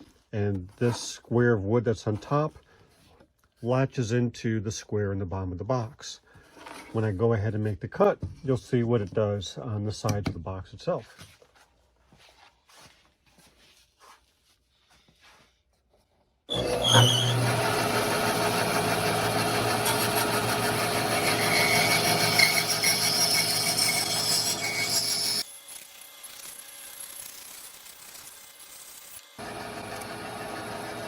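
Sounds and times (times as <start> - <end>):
bandsaw cutting wood: 16.5 - 31.0
bandsaw running hum: 16.5 - 31.0.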